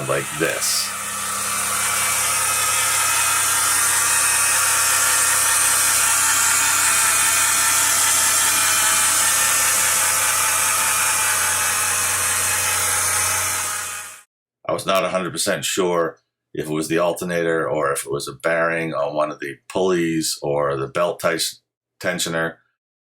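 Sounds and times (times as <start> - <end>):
alternator whine: 0.0 - 14.2
car engine running: 0.0 - 14.2.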